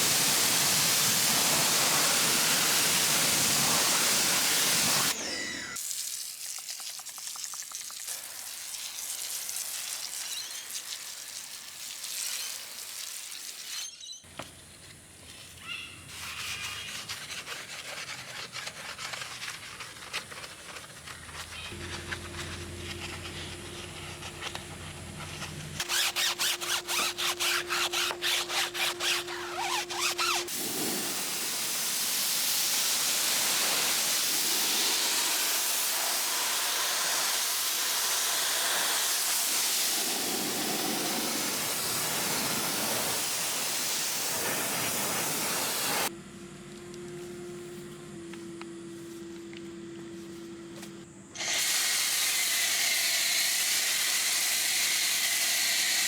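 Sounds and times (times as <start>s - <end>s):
pressure washer pulses: 0.0s - 5.8s, 25.8s - 46.1s
water spray hissing: 0.0s - 13.9s, 25.8s - 46.1s, 51.4s - 56.0s.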